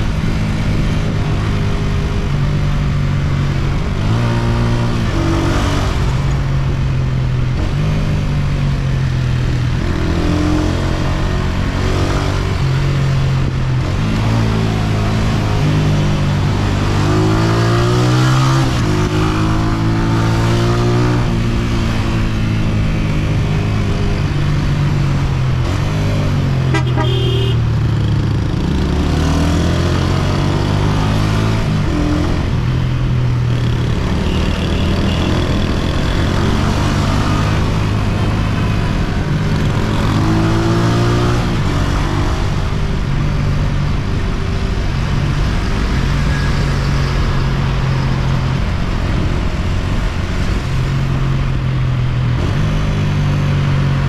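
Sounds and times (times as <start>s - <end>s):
wind and road rush: 0.0s - 54.0s
motorcycle engine running: 21.4s - 29.0s, 32.3s - 36.8s
vehicle horn toot: 26.7s - 27.6s.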